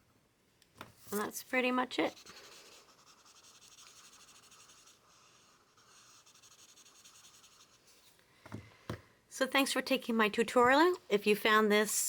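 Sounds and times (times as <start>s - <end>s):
drawing tool scratching paper: 2.0s - 8.0s.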